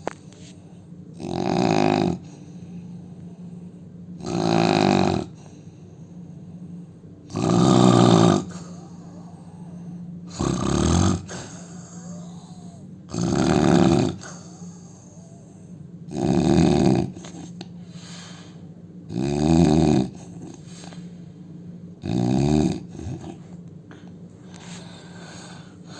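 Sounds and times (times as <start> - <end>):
man snoring: 1.1 - 2.5, 4.2 - 5.6, 7.3 - 15.4, 16.1 - 17.5, 19.1 - 21.0, 22.0 - 23.5.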